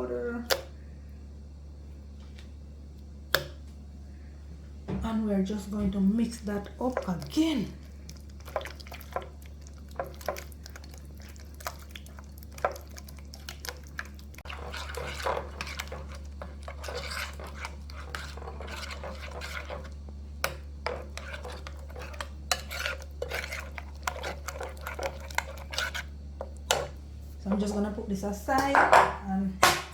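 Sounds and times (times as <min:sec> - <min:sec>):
utensil stirring and scraping: 0:05.7 - 0:28.0.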